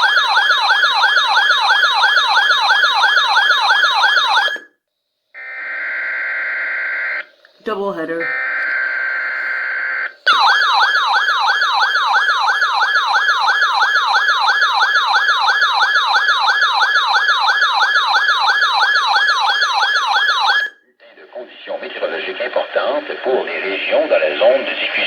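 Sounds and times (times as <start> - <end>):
electronic siren alarm sweeping: 0.0 - 4.8, 8.2 - 20.8.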